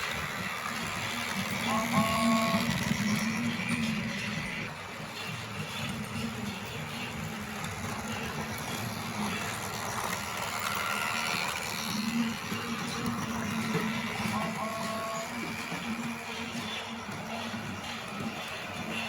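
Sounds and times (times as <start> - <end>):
toy train rumble and whir: 0.0 - 19.0.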